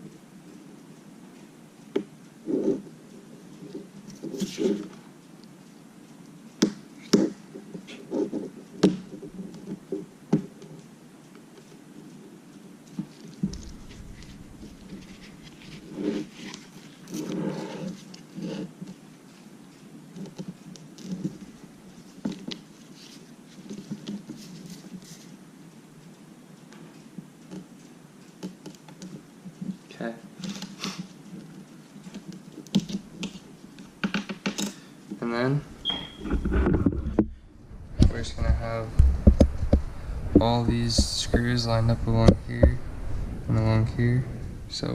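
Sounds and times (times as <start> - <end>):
hand tools clicking and tapping: 30.4 - 34.8.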